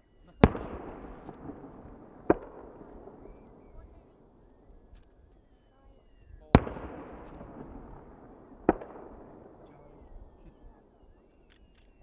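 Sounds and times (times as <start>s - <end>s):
echoing rumble and crackle: 0.4s - 5.2s
firework shells bursting: 0.4s - 5.7s, 6.5s - 12.0s.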